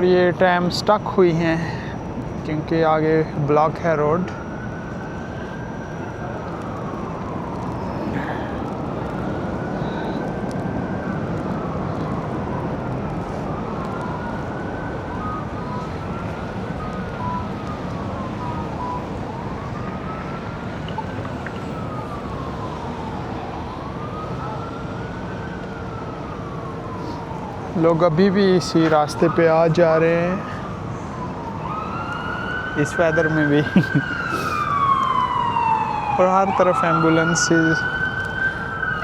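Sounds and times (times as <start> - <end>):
ambulance siren wailing: 0.0 - 39.0
city traffic: 0.0 - 39.0.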